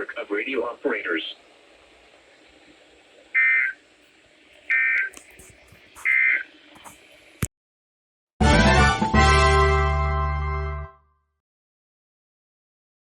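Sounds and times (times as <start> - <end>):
click: 5.0 - 6.2.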